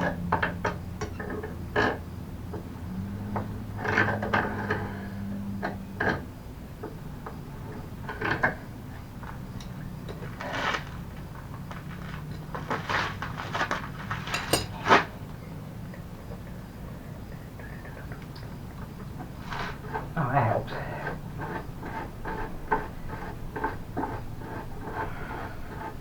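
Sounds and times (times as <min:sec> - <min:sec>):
hand tools clinking on metal: 0:14.3 - 0:14.9.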